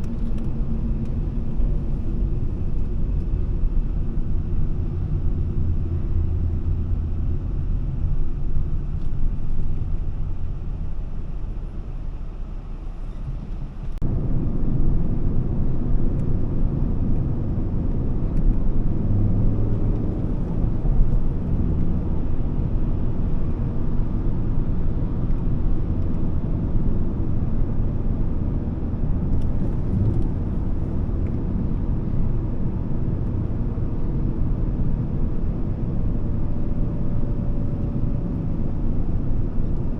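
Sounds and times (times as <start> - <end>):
car engine running: 0.0 - 39.9
tyre and road noise: 27.7 - 39.9.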